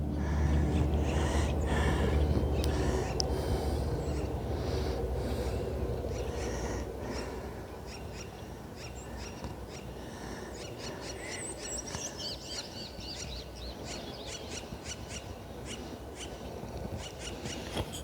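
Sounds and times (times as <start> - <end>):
steady low rumble: 0.0 - 10.2
birds chirping: 0.0 - 16.4.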